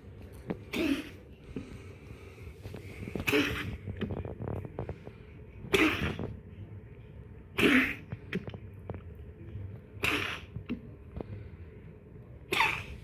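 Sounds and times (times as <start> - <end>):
pet coughing: 0.6 - 1.3, 3.0 - 4.1, 5.6 - 6.4, 7.5 - 8.2, 10.0 - 10.8, 12.5 - 13.0.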